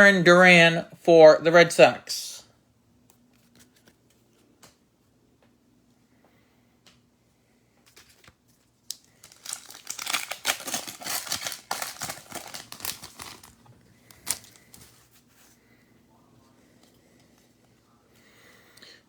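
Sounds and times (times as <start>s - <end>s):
foil wrapper tearing and crinkling: 7.9s - 15.0s
sharp foil crackle: 7.9s - 15.0s.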